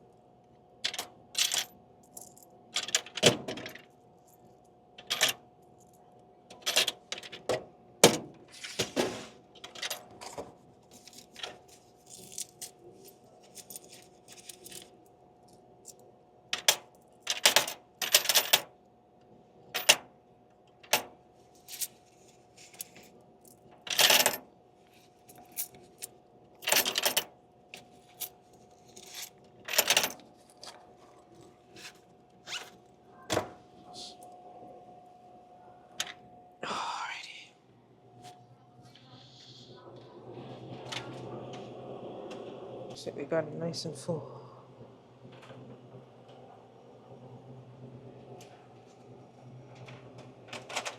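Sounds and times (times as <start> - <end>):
faint steady hum: 0.0 - 50.9
clicks and rattles of items: 6.5 - 7.6, 9.6 - 15.0.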